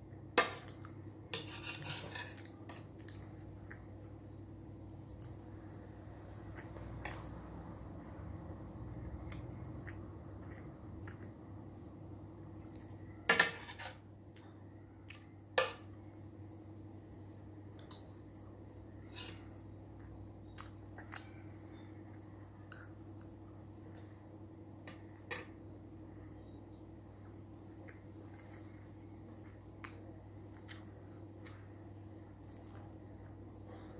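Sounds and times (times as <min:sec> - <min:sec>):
steady low hum: 0:00.0 - 0:33.9
utensils clinking against a dish: 0:01.3 - 0:02.8.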